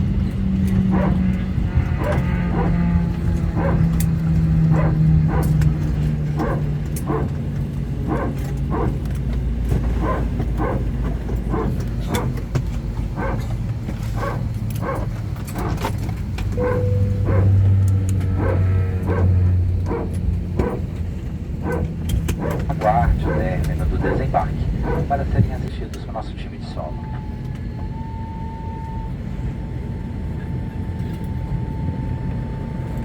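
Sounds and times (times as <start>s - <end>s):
aircraft cabin low hum: 0.0s - 33.0s
dog barking: 0.8s - 7.3s, 8.0s - 9.0s, 10.0s - 12.4s, 13.1s - 13.5s, 14.1s - 15.8s, 16.6s - 17.7s, 18.3s - 20.9s, 21.6s - 25.2s.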